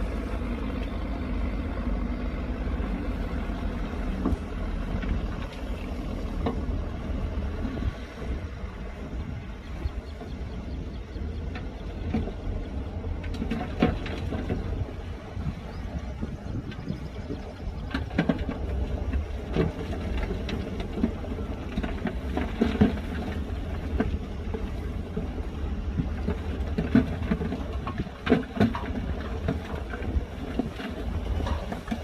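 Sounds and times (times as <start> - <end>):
diesel engine rumble: 0.0 - 32.0
machinery clanks and knocks: 3.2 - 7.8, 9.6 - 32.0.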